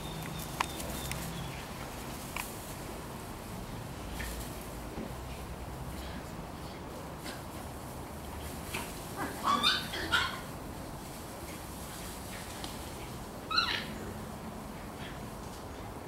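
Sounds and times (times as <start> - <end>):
puppies yipping: 9.4 - 10.5, 13.5 - 14.0.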